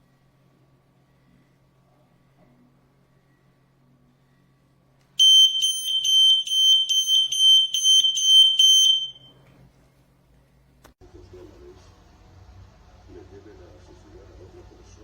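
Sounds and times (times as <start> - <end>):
smoke alarm beeping: 5.2 - 9.4.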